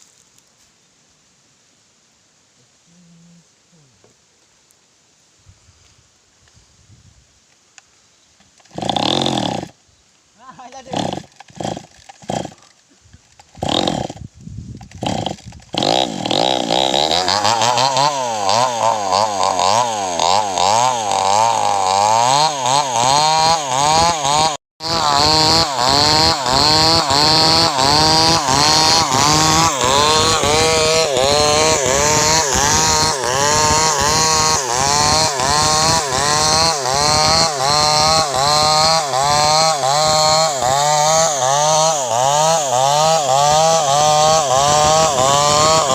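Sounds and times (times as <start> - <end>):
chainsaw cutting wood: 8.4 - 9.8, 10.6 - 45.9.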